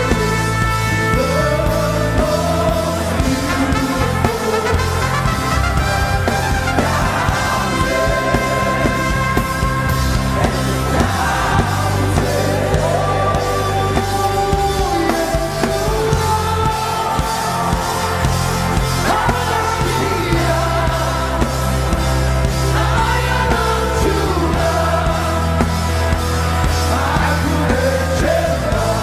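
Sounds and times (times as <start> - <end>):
person singing: 0.0 - 5.2, 6.6 - 21.9
gospel band playing: 0.0 - 29.0
drum beat: 4.4 - 28.8.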